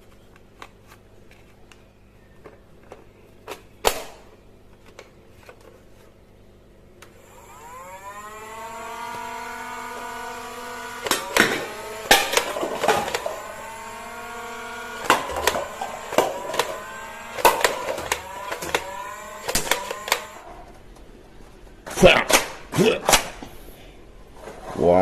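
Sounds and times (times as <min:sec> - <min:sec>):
toy gun motor whirring: 0:07.2 - 0:20.5
sharp snapping shots: 0:11.0 - 0:13.4, 0:15.0 - 0:20.4, 0:22.1 - 0:23.5.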